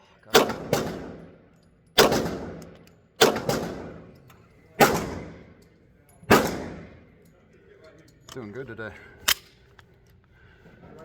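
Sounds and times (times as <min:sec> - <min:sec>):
pistol shots with ringing echo: 0:00.3 - 0:05.6, 0:06.3 - 0:07.1.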